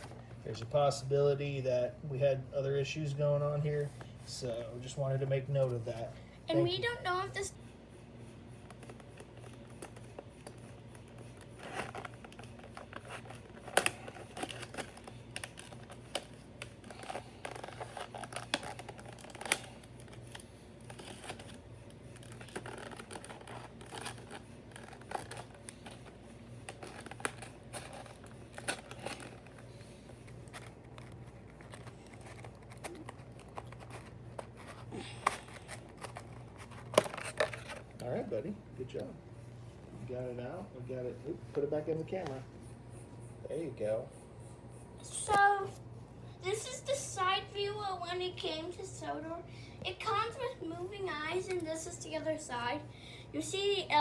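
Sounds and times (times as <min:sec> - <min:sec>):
packaging crinkling: 0:08.7 - 0:38.2.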